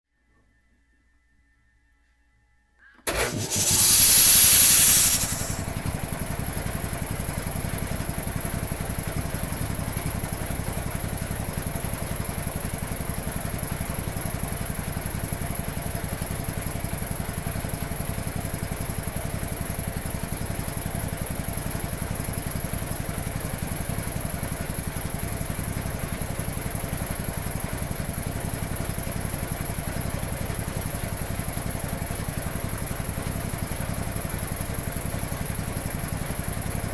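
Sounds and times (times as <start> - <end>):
loud hissing rush: 3.1 - 5.7
air compressor chugging: 3.1 - 5.9.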